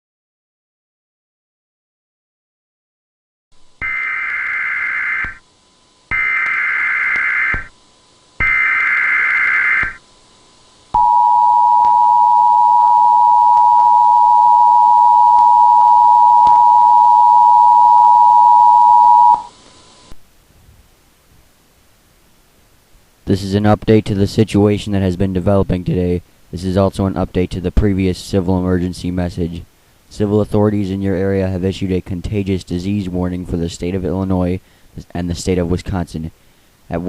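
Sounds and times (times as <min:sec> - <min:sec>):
long steady attention tone: 0:03.6 - 0:07.8, 0:08.4 - 0:10.1, 0:10.9 - 0:20.2
screeching digital data tones: 0:03.8 - 0:05.4, 0:06.1 - 0:07.7, 0:08.4 - 0:10.0.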